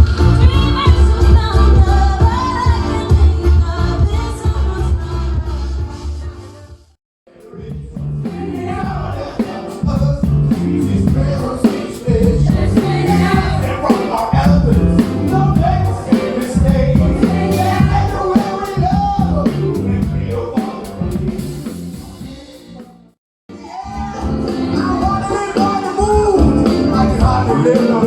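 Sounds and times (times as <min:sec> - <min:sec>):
live band with singer: 0:00.0 - 0:06.7, 0:07.4 - 0:28.0.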